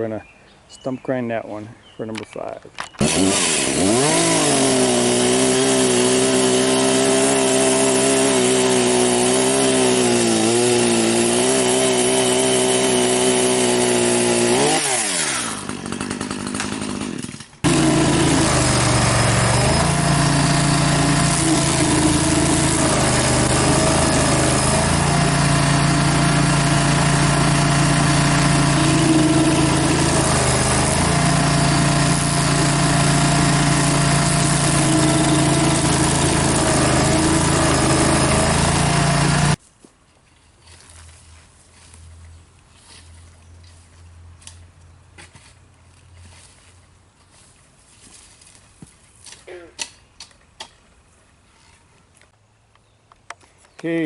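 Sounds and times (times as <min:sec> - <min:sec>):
small gasoline engine running: 0:03.0 - 0:39.6.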